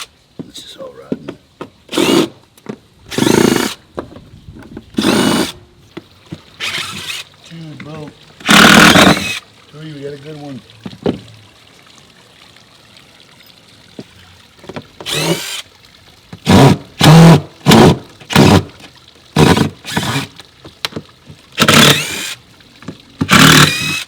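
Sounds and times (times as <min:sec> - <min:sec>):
impact driver bursts: 0:01.9 - 0:02.3, 0:03.1 - 0:03.8, 0:05.0 - 0:05.6, 0:08.4 - 0:09.4, 0:15.0 - 0:15.6, 0:16.5 - 0:18.6, 0:19.4 - 0:20.3, 0:21.6 - 0:22.4, 0:23.3 - 0:24.0
screws snapping: 0:21.6 - 0:22.4, 0:23.3 - 0:24.0.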